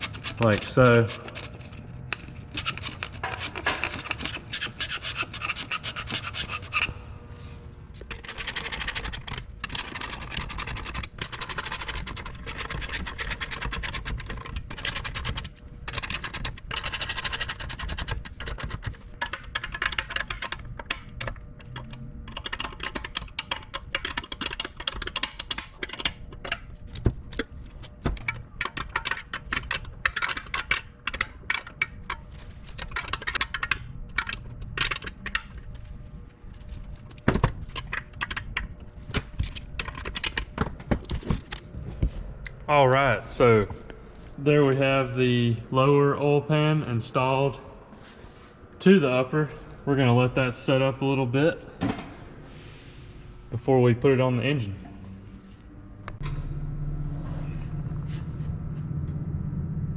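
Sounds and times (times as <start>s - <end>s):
scraper scraping sealant off metal: 0.0s - 7.0s.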